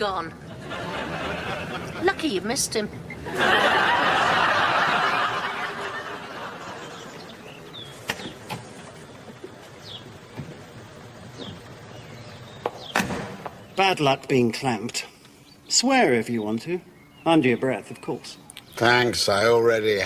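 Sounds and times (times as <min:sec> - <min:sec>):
studio audience laughing: 0:00.4 - 0:02.4, 0:03.1 - 0:07.4.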